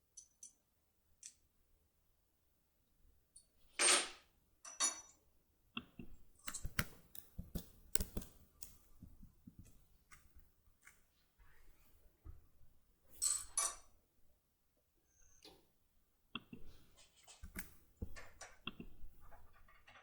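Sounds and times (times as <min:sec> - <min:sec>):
small metal clicks and taps: 0:05.8 - 0:08.8.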